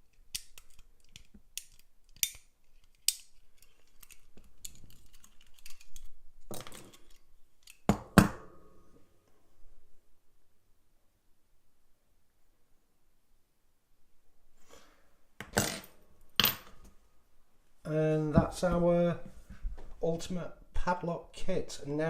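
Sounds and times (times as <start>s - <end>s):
metal clicks of lock picking: 0.1s - 6.2s, 6.8s - 7.9s.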